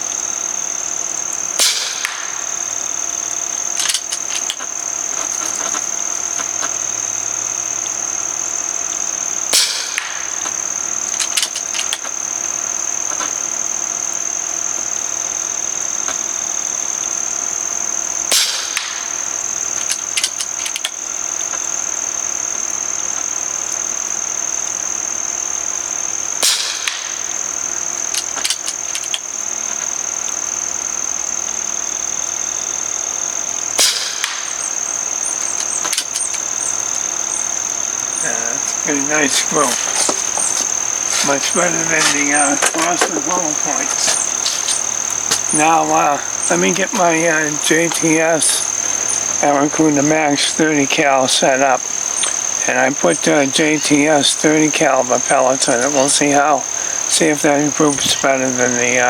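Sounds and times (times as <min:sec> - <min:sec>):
crickets trilling: 0:00.0 - 0:59.0
air rifle shot crack: 0:01.6 - 0:04.7, 0:33.8 - 0:36.9.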